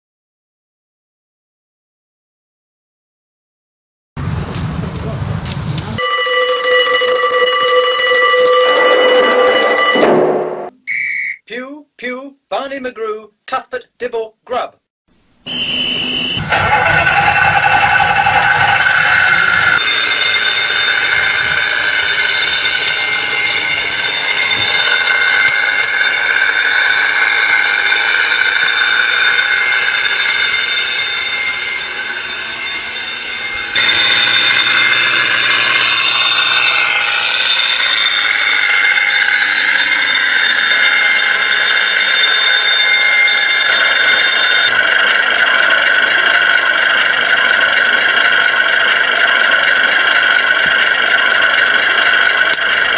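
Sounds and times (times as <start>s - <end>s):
model fire engine motor whining: 16.4s - 52.9s.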